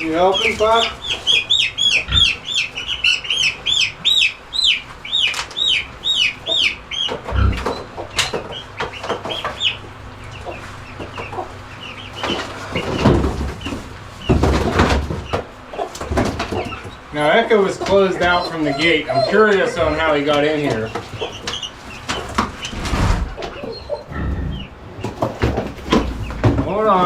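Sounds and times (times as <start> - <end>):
chicks peeping: 0.0 - 27.0
rustling thumps: 22.1 - 23.6.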